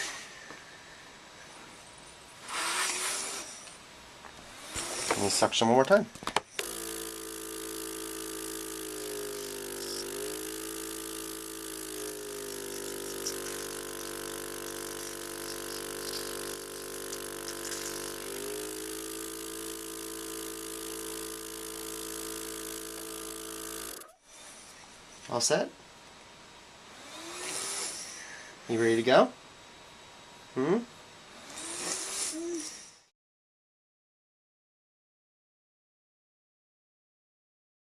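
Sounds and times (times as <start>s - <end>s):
suction machine pump humming: 4.5s - 5.6s, 6.5s - 24.5s.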